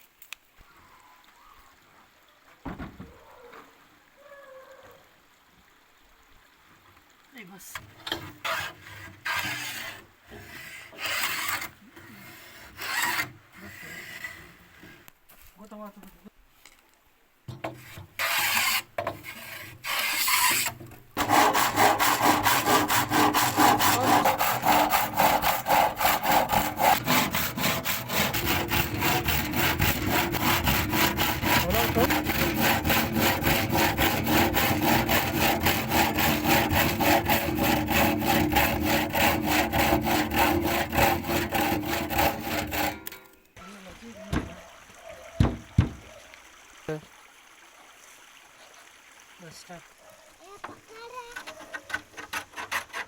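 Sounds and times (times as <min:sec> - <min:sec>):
saw cutting wood: 0:08.0 - 0:15.1, 0:17.6 - 0:43.3, 0:45.4 - 0:46.1, 0:51.0 - 0:53.0.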